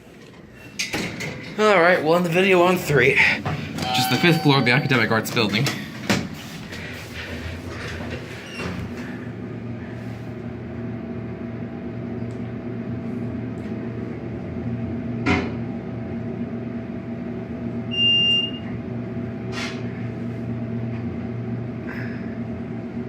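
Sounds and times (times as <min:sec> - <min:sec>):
elevator mechanical hum: 0:00.0 - 0:23.0
elevator floor chime beep: 0:03.8 - 0:05.6, 0:17.9 - 0:18.7.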